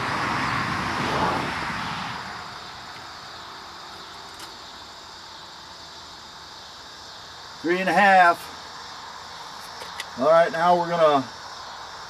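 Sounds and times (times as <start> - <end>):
vehicle passing by: 0.0 - 3.4.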